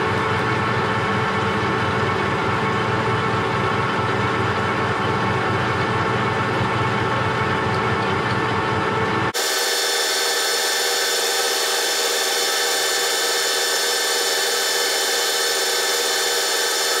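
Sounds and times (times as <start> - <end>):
metal lathe whining: 9.4 - 17.0.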